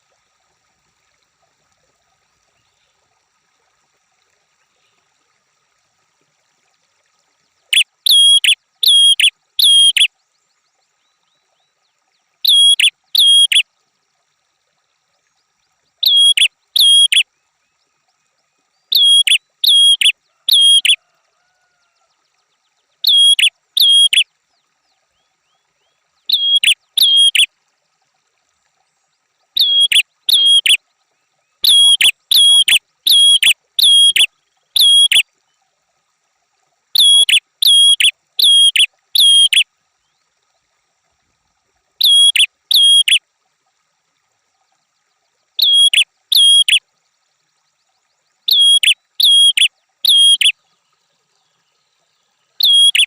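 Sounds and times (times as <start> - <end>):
songbird whistled calls: 7.7 - 10.1, 12.4 - 13.6, 16.0 - 17.2, 18.9 - 21.0, 23.0 - 24.2, 26.3 - 27.5, 29.6 - 30.8, 31.6 - 35.2, 37.0 - 39.6, 42.0 - 43.2, 45.6 - 46.8, 48.5 - 50.5, 52.6 - 53.0.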